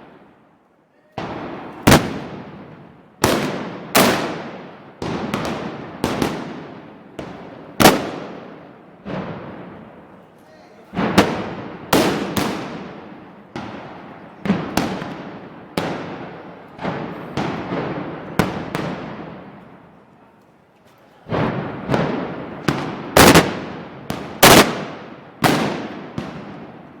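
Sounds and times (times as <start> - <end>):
gunpowder bangs echoing: 1.3 - 8.6, 21.4 - 26.9.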